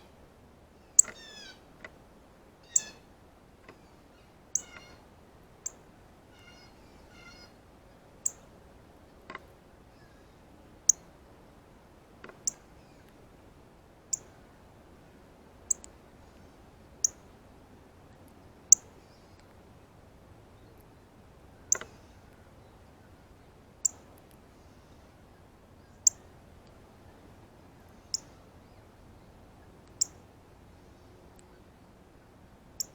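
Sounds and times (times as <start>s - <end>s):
bird giving sharp high chirps: 2.7s - 3.0s, 4.6s - 4.8s.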